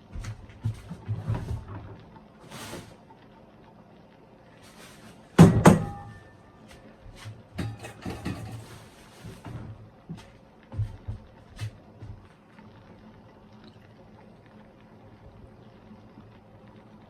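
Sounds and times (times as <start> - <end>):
loud kitchen clanks: 5.4 - 6.4, 7.6 - 8.7.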